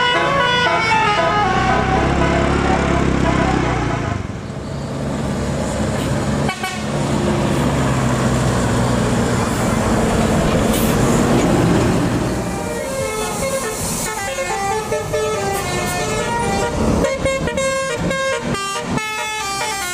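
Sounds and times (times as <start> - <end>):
bus multi-tone air horn: 0.0 - 4.3, 6.4 - 7.0, 12.4 - 19.9.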